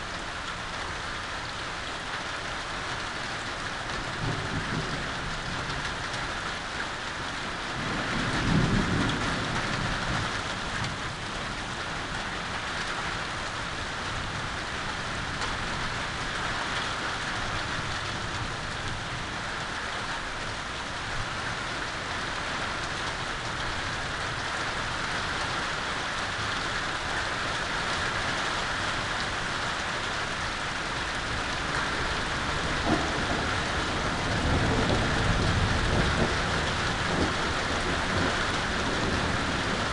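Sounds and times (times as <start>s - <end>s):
heavy rain falling: 0.0s - 39.9s
thunder rumbling: 30.7s - 39.9s.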